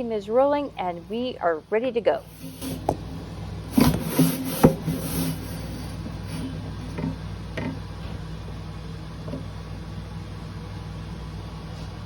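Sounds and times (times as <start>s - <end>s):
steady low hum: 0.0s - 12.0s
brush scraping against coils: 2.2s - 7.2s.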